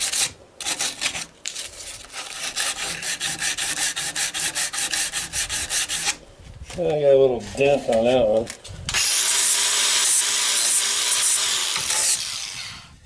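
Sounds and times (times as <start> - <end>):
sandpaper scraping wood: 0.0 - 6.2.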